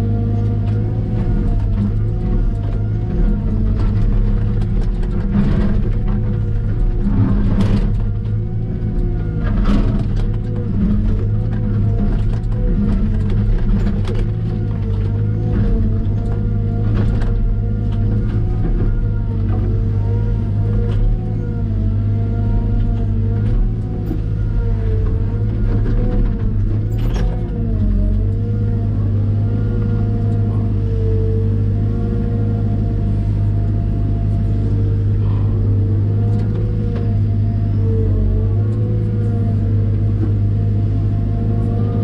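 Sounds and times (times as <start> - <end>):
excavator diesel engine under load: 0.0 - 42.0.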